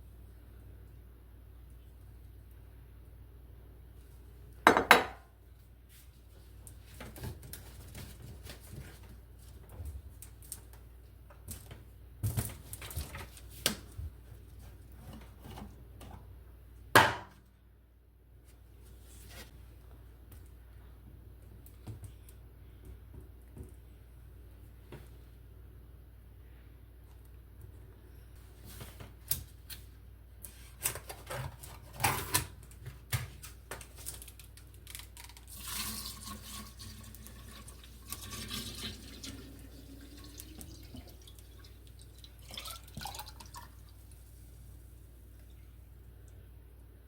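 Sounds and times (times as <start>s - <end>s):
dishes clattering: 4.7s - 5.2s.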